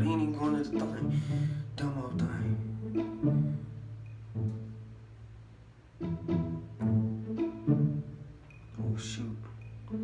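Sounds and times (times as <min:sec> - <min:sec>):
low string notes: 0:00.0 - 0:10.0.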